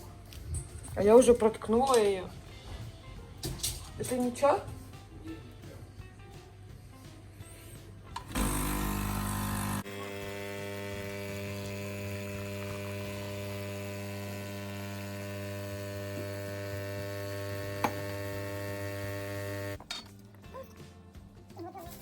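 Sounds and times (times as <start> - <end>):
coffee machine pump humming: 8.2 - 19.8.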